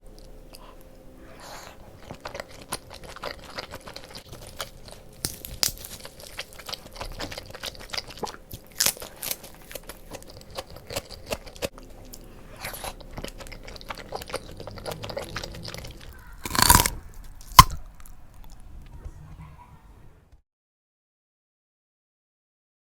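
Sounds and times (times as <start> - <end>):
wet chewing mouth clicks: 2.0 - 18.6.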